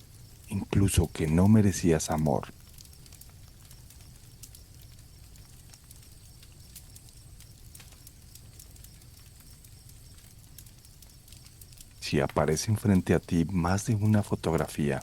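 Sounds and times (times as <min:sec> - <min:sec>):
campfire crackling and popping: 0:00.0 - 0:15.0
crickets chirping: 0:00.0 - 0:15.0.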